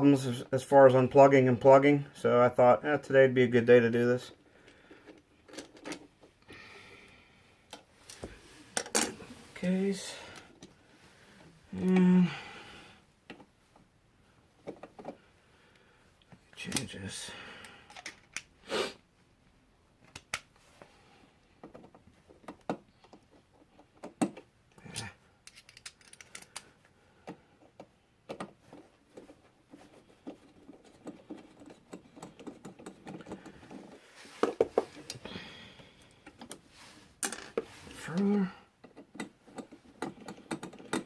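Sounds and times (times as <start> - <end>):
hand tools clicking and rattling: 25.4 - 26.6, 37.2 - 41.0.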